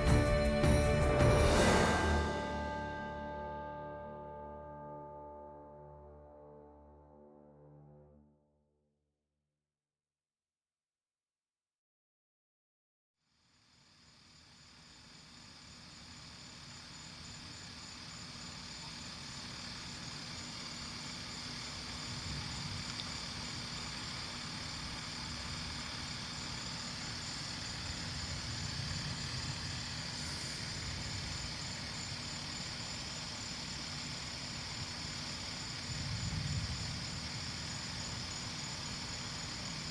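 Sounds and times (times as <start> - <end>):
night insects trilling: 13.4 - 39.9.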